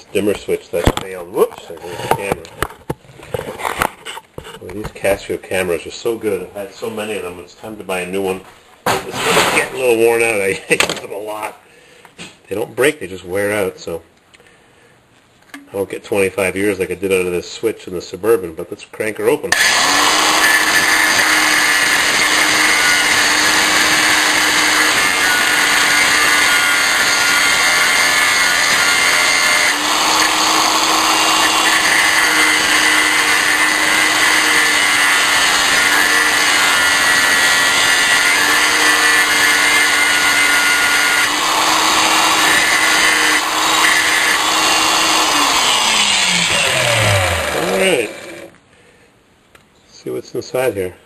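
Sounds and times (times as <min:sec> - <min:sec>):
power tool grinding: 0:19.5 - 0:48.6
motor spinning down whine: 0:40.1 - 0:48.5.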